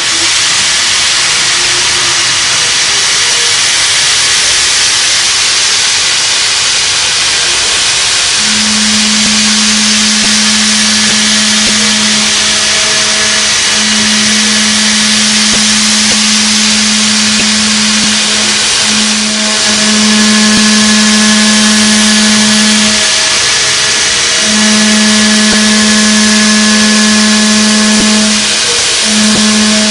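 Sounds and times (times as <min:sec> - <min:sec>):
loud steady hiss: 0:00.0 - 0:29.9
low hum: 0:07.4 - 0:29.9.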